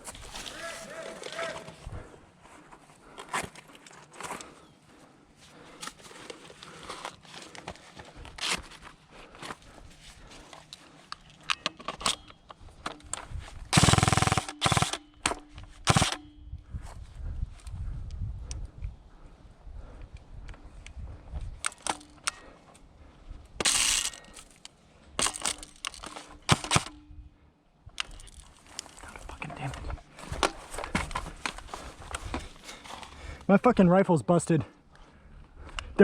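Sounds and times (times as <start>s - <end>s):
airsoft guns firing: 13.7s - 16.4s, 25.2s - 27.0s.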